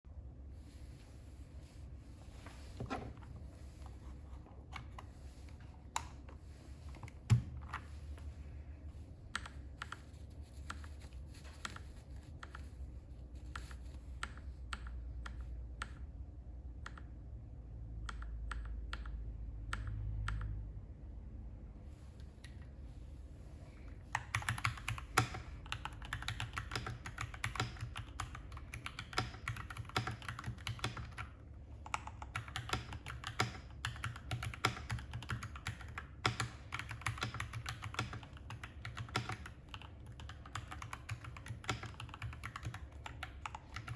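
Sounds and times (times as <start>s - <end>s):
mechanical keyboard typing: 24.1s - 43.9s.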